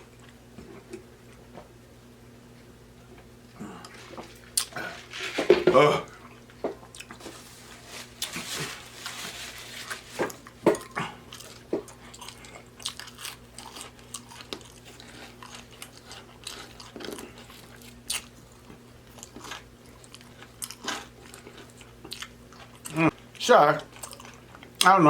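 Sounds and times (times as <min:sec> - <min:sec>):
faint electrical hum: 0:00.0 - 0:25.0
close-up chewing and smacking: 0:06.2 - 0:07.2, 0:10.4 - 0:24.9.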